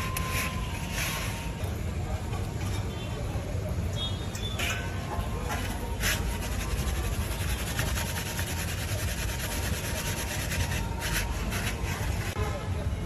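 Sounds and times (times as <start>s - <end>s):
rhythmic rasping strokes: 5.5s - 12.4s.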